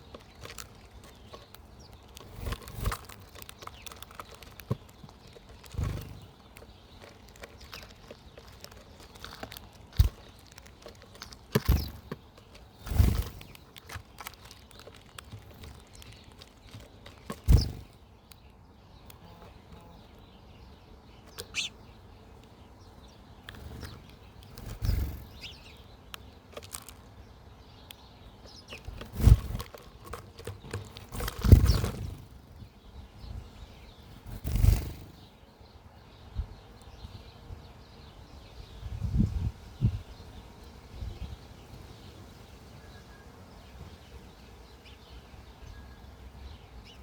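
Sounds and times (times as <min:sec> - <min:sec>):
wing flutters: 0:00.0 - 0:18.1, 0:23.4 - 0:25.8, 0:28.4 - 0:32.8, 0:34.0 - 0:35.4
high bird chirp: 0:00.0 - 0:37.2
birds pecking: 0:00.0 - 0:38.2.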